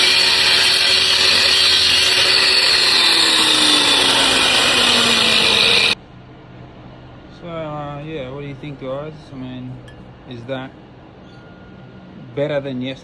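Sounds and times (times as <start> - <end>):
angle grinder grinding metal: 0.0 - 6.0.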